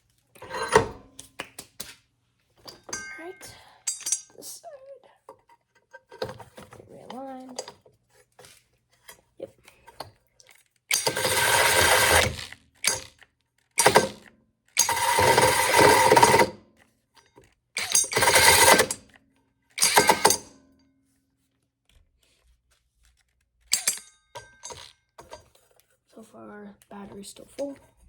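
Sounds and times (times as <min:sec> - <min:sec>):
drill with hole saw cutting wood: 0:10.9 - 0:13.1, 0:13.8 - 0:14.2, 0:14.8 - 0:16.5, 0:17.8 - 0:19.0, 0:19.8 - 0:20.4.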